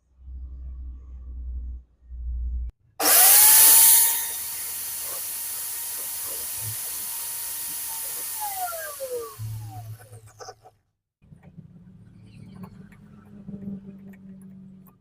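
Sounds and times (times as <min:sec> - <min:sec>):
angle grinder whining: 0:03.0 - 0:10.5.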